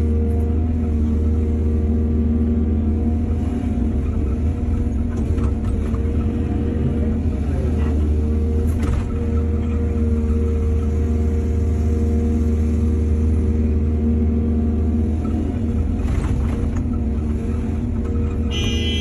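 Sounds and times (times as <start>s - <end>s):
excavator diesel engine running: 0.0s - 19.0s.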